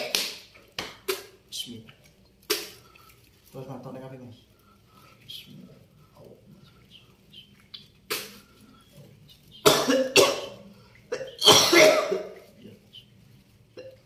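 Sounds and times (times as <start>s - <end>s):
person coughing: 9.6s - 12.4s.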